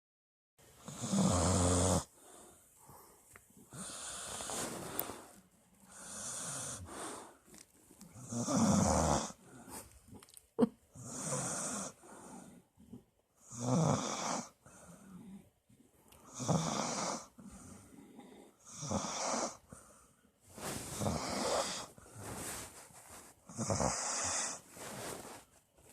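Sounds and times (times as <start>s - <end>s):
person snoring: 0.8s - 2.1s, 8.2s - 9.4s, 16.3s - 17.3s, 18.7s - 19.6s, 20.9s - 22.0s, 23.5s - 24.7s.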